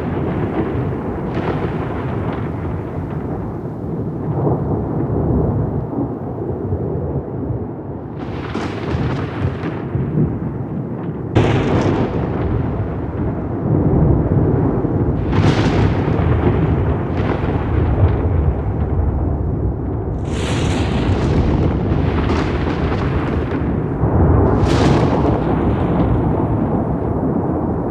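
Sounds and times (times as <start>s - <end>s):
sharp thunder cracks: 0.0s - 27.9s
thunder rumbling: 0.0s - 27.9s.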